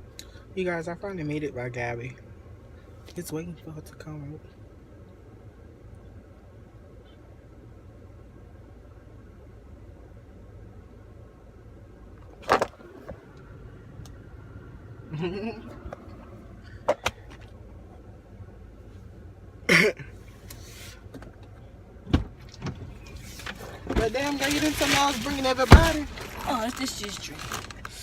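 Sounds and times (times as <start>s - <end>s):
low rumble inside car: 0.0s - 28.0s
heavy thump: 25.6s - 26.4s.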